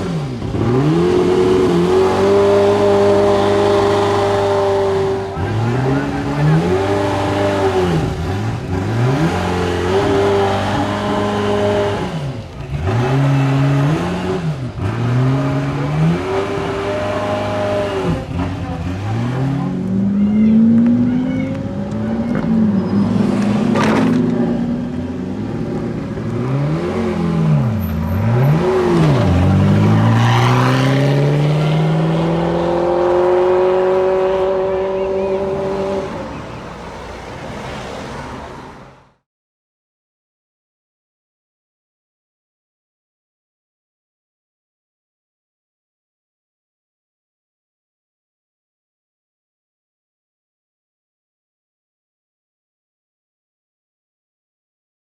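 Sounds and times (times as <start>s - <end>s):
car engine accelerating through gears: 0.0s - 38.8s.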